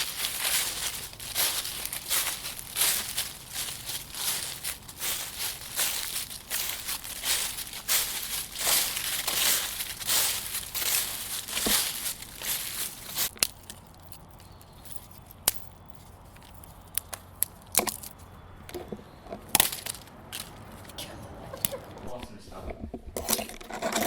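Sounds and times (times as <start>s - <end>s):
rough crunching: 0.0s - 21.0s.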